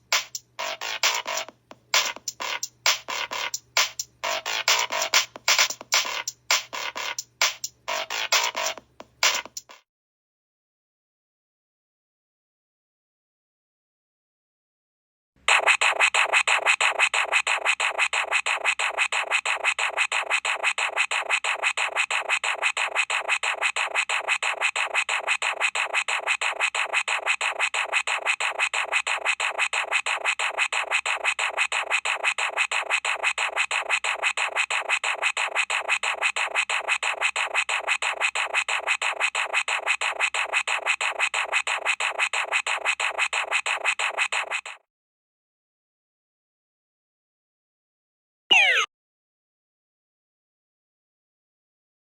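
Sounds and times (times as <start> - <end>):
electronic ringtone music: 48.5 - 48.9.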